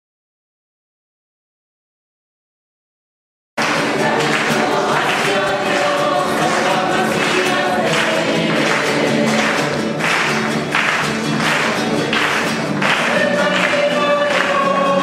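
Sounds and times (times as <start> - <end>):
choir singing a hymn: 3.6 - 10.2, 11.6 - 15.0.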